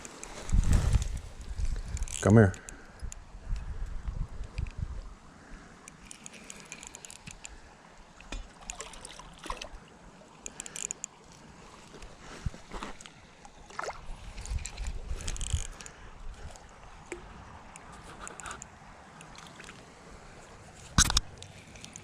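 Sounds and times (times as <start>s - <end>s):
water sloshing and splashing: 6.0s - 22.0s.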